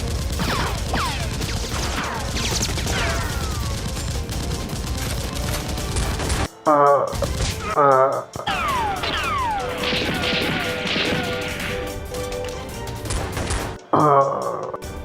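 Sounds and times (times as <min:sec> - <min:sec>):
rapid gunfire volley: 0:00.0 - 0:06.5, 0:07.2 - 0:07.8, 0:08.4 - 0:12.2, 0:12.9 - 0:13.8.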